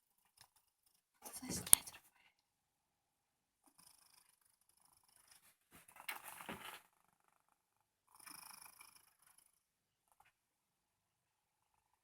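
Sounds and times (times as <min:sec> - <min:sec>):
soft snoring: 0:08.1 - 0:09.6.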